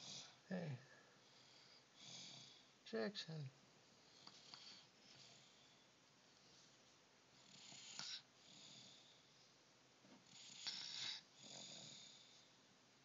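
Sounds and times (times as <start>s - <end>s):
faint snoring: 0.0s - 2.7s, 7.4s - 9.3s, 10.2s - 12.6s.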